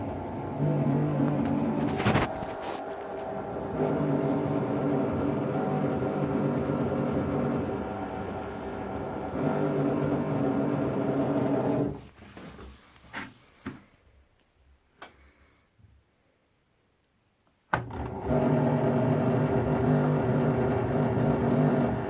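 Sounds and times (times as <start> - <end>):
washer dryer droning hum: 0.0 - 12.1, 17.8 - 22.0.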